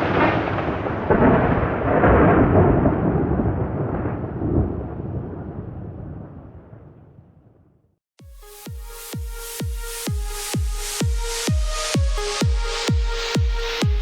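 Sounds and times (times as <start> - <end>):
rolling thunder rumble: 0.0 - 7.7.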